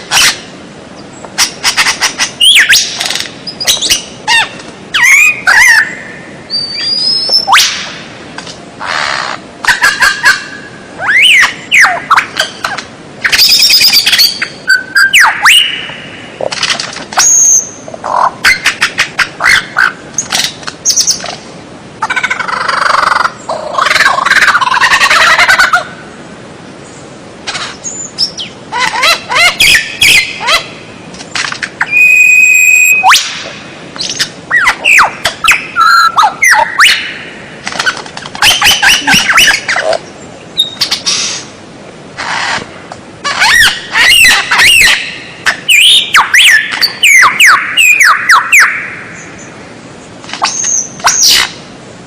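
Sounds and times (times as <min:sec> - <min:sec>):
bird singing whistles and trills: 0:02.4 - 0:07.8, 0:11.0 - 0:16.1, 0:17.2 - 0:17.8, 0:31.8 - 0:33.3, 0:34.0 - 0:37.2, 0:40.6 - 0:41.0, 0:43.4 - 0:49.5.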